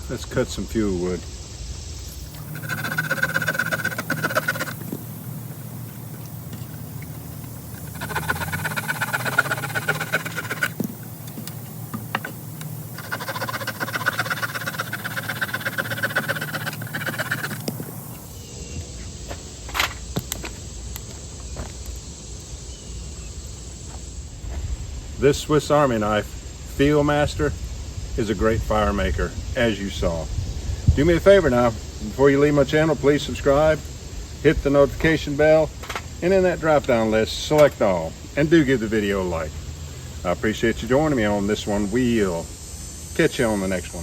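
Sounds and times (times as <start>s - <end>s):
saw cutting through a branch: 2.3s - 4.9s, 7.8s - 11.0s, 12.9s - 17.9s.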